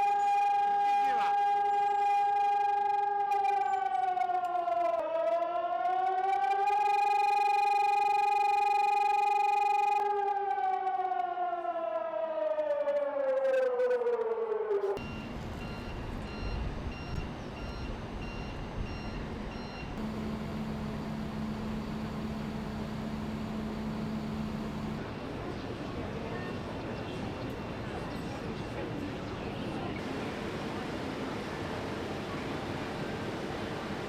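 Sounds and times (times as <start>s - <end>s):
air-raid siren wailing: 0.0s - 34.0s
street noise: 0.0s - 34.0s
low steady hum: 15.0s - 25.8s.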